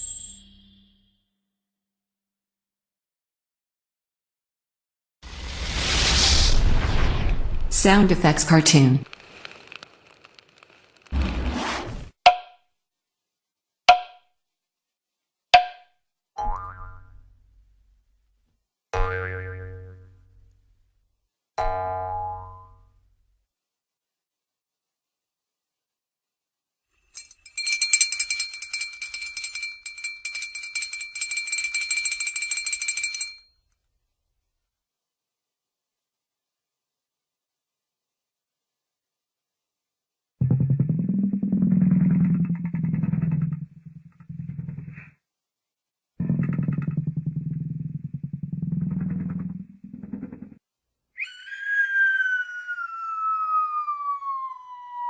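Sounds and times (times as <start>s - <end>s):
high rattling and jingling: 27.2s - 33.5s
cartoon falling whistle: 51.2s - 54.7s.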